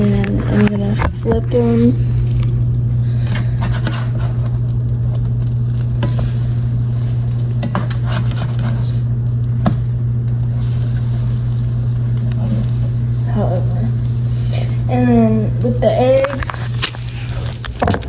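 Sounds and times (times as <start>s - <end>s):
low hum: 0.0s - 18.0s
food sizzling in a frying pan: 1.7s - 17.7s
spatula scraping and tapping pan: 3.5s - 5.3s, 6.0s - 8.9s.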